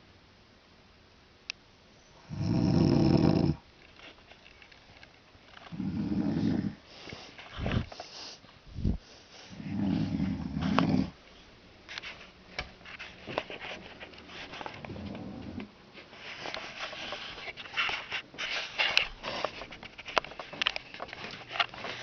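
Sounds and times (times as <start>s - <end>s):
person snoring: 2.2s - 3.6s, 5.7s - 6.8s, 9.5s - 11.2s.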